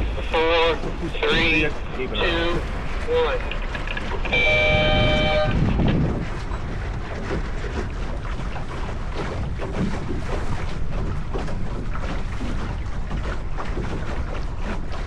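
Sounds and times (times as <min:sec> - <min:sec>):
water washing along hull: 0:00.0 - 0:15.0
wind buffeting microphone: 0:00.0 - 0:15.0
signal horn tone: 0:04.2 - 0:05.6.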